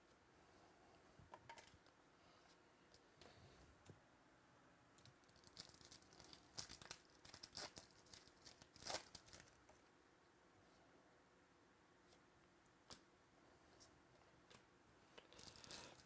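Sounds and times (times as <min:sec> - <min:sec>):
wrapper tearing and crinkling: 0:05.2 - 0:09.6.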